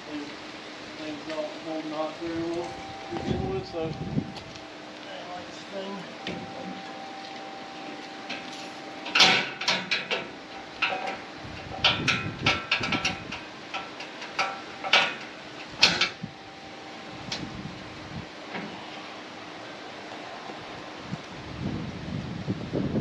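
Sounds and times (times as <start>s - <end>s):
steady low hum: 0.0s - 23.0s
strap hardware clanking and rattling: 6.2s - 16.2s.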